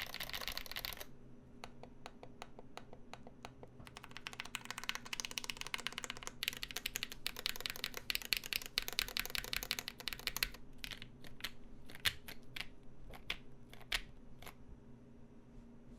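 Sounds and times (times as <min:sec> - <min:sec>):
fast typing on mechanical keyboard: 0:00.0 - 0:01.1, 0:03.2 - 0:14.1
faint fan hum: 0:00.0 - 0:15.9.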